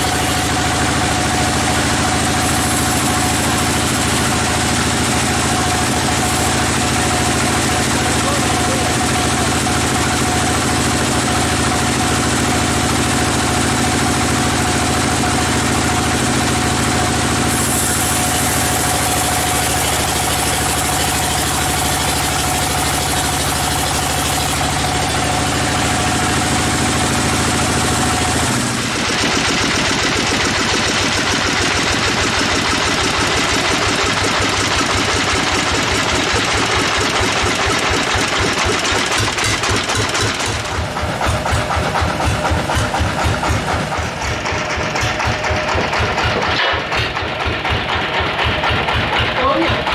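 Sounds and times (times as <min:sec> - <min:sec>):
sawmill engine running: 0:00.0 - 0:49.9.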